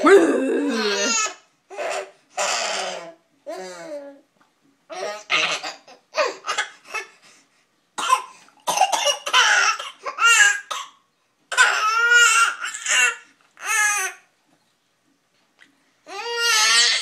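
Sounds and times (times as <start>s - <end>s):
person crying with high wails: 0.0s - 1.2s.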